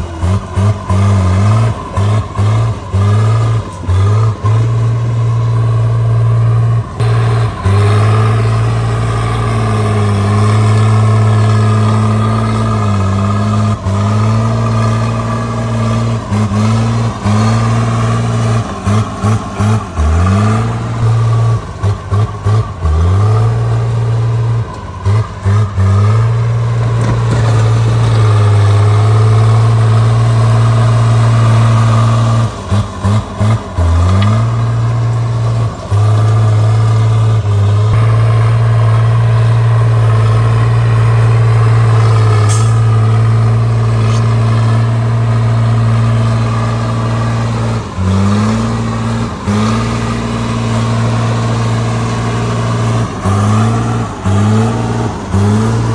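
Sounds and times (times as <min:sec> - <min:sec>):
bulldozer diesel engine: 0:00.0 - 0:55.9.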